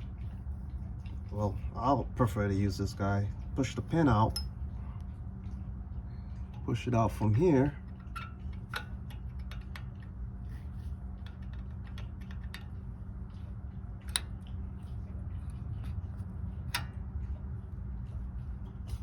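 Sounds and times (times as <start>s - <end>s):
steady low hum: 0.0s - 19.0s
metal tool clicks and taps: 8.0s - 10.1s, 11.2s - 12.8s, 14.0s - 14.5s.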